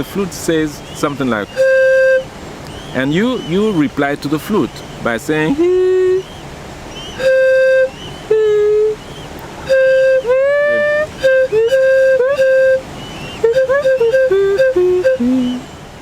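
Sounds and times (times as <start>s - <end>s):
one-note bamboo flute: 0.8s - 3.7s, 5.5s - 15.8s
person whooping voice notes: 5.5s - 6.3s, 9.7s - 12.8s.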